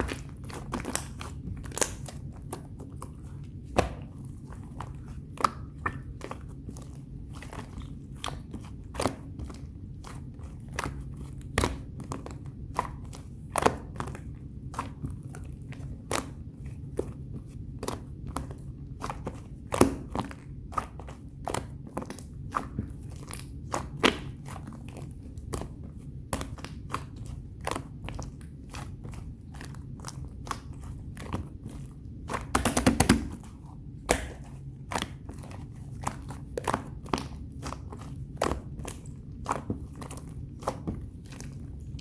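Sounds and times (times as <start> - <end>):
slime clicking and popping: 0.0 - 3.0, 32.3 - 42.0.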